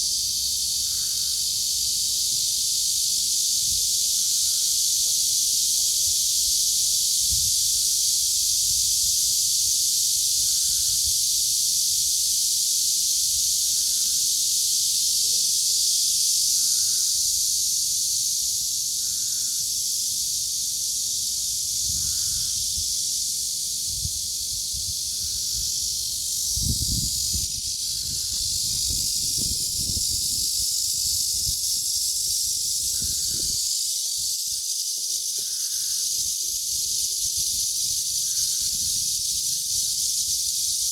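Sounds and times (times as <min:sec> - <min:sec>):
cicadas buzzing: 0:00.0 - 0:40.9.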